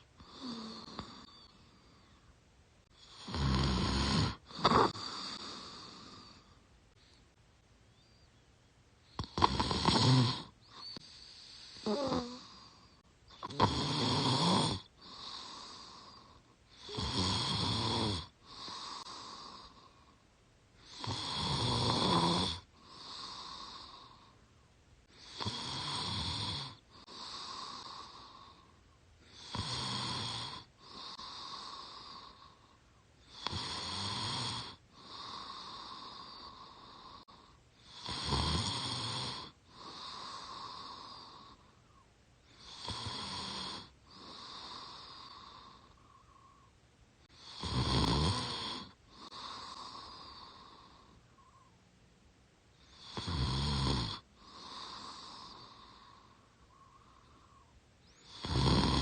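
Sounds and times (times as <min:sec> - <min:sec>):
woman snoring: 0:00.0 - 0:02.2, 0:02.9 - 0:06.6, 0:09.1 - 0:20.2, 0:20.8 - 0:24.4, 0:25.0 - 0:41.7, 0:42.5 - 0:46.6, 0:47.3 - 0:51.6, 0:52.8 - 0:59.0
soft breath: 0:00.0 - 0:03.1, 0:04.7 - 0:09.2, 0:10.6 - 0:13.2, 0:18.4 - 0:20.4, 0:22.6 - 0:25.3, 0:39.5 - 0:42.7, 0:43.8 - 0:47.4, 0:48.8 - 0:52.0, 0:54.2 - 0:58.3.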